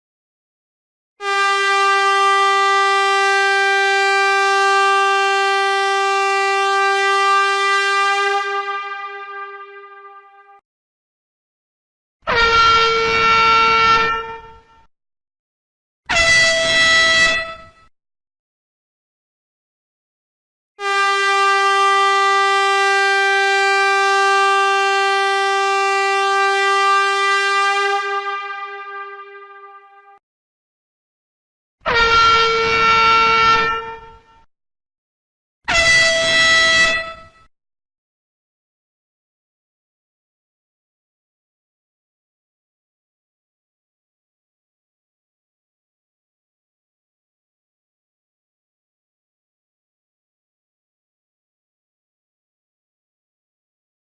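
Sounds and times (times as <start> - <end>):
air horn blast: 1.2 - 10.6, 12.3 - 14.9, 16.1 - 17.9, 20.8 - 30.2, 31.8 - 34.3, 35.7 - 37.5.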